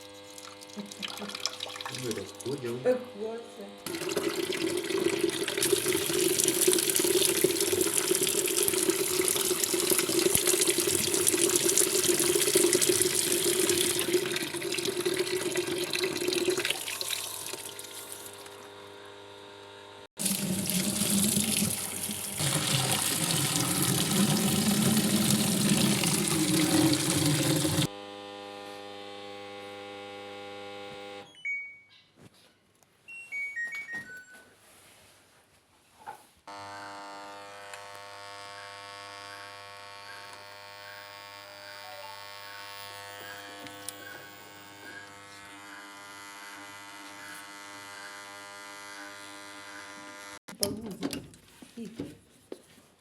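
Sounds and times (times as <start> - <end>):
water rushing into washing machine: 3.9 - 18.6, 20.2 - 27.9.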